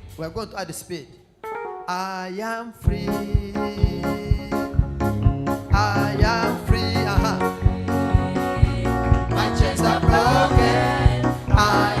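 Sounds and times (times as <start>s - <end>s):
gospel song on keyboard: 1.4s - 12.0s
person singing: 1.9s - 4.7s
kick drum beat: 2.9s - 12.0s.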